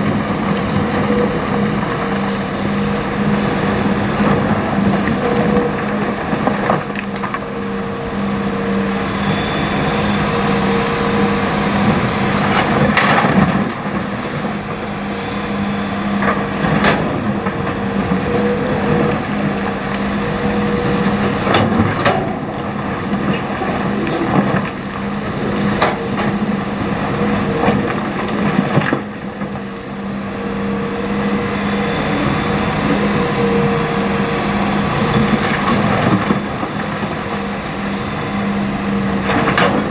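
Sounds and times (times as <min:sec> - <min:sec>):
excavator diesel engine: 0:00.0 - 0:39.9.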